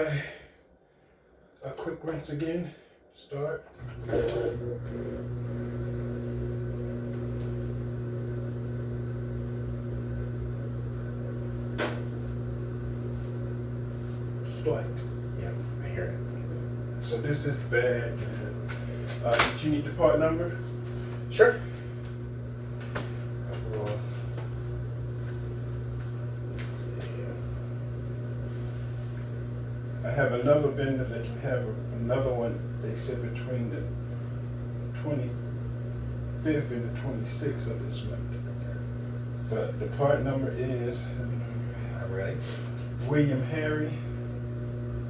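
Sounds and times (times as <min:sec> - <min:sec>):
washing machine humming: 0:03.7 - 0:45.0.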